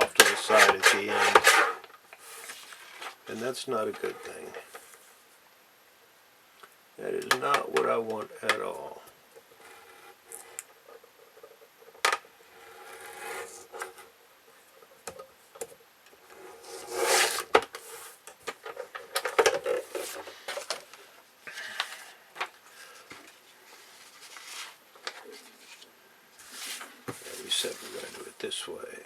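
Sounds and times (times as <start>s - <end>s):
paper rustling: 0.0s - 5.2s, 16.6s - 21.1s, 21.9s - 28.4s.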